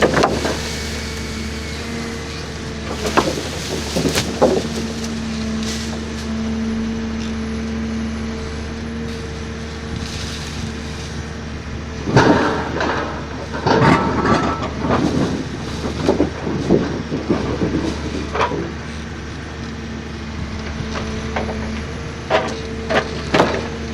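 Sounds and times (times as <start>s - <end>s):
metal clattering and knocks: 0.0s - 7.2s, 12.0s - 19.4s
diesel engine running: 0.0s - 23.9s.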